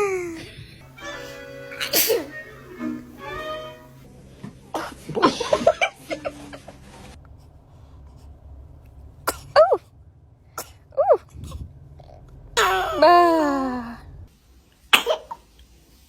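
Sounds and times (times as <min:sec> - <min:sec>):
child sneezing: 0:01.8 - 0:02.4, 0:14.9 - 0:15.4.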